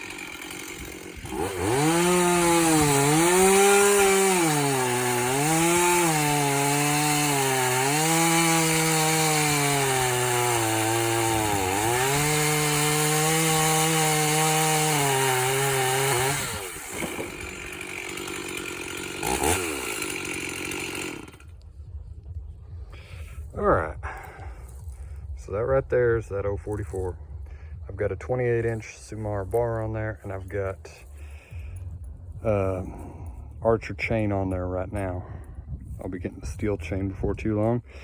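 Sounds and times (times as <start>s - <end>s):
chainsaw cutting log: 0.0s - 21.6s.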